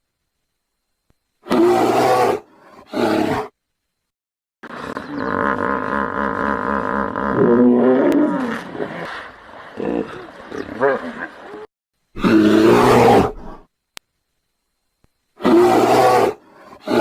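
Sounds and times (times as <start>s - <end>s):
pulsing animal call: 4.6s - 9.2s.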